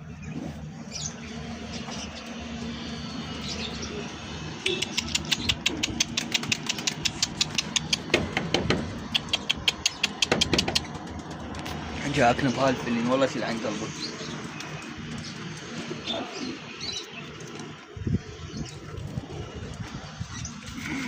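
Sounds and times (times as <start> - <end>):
low engine-like hum: 0.0 - 21.0
fast sharp clicks: 4.7 - 11.9.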